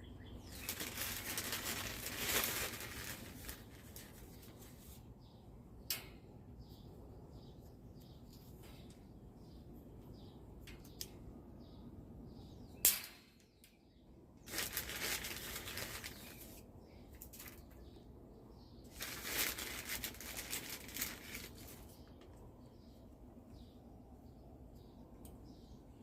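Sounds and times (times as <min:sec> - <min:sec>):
faint birds chirping: 0:00.0 - 0:26.0
rustling: 0:00.4 - 0:05.1, 0:14.4 - 0:16.6, 0:18.9 - 0:22.3.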